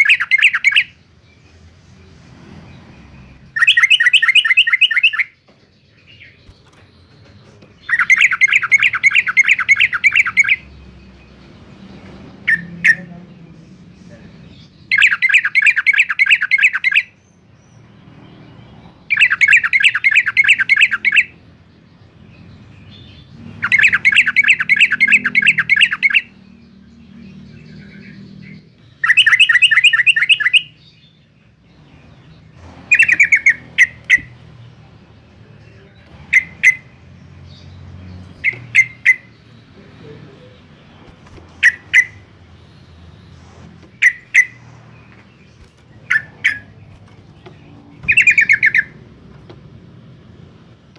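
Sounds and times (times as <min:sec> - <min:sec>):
bird calling bright notes: 0:03.6 - 0:05.4, 0:28.9 - 0:30.8, 0:41.6 - 0:42.3, 0:43.9 - 0:44.6, 0:48.1 - 0:49.0.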